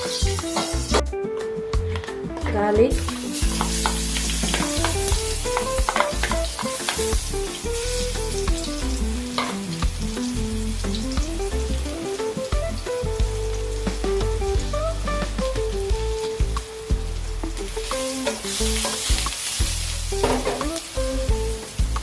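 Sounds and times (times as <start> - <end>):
soft melody with low bass: 0.0 - 22.0
garlic sizzling in hot oil: 3.2 - 15.2, 15.9 - 22.0.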